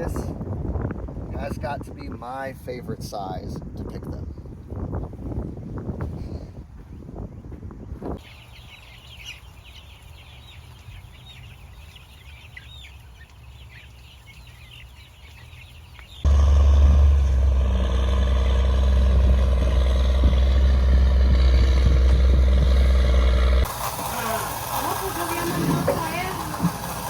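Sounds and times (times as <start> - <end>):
vehicle engine humming: 16.0 - 27.0.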